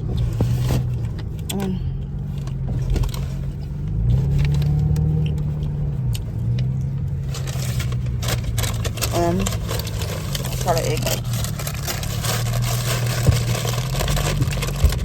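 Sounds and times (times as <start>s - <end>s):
car engine hum inside cabin: 0.0s - 15.0s.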